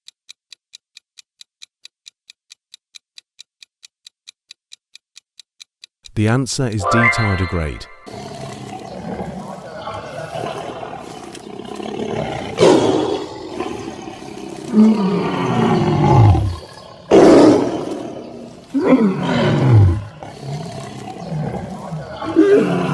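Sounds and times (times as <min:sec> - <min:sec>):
animal roaring: 0:08.1 - 0:22.9.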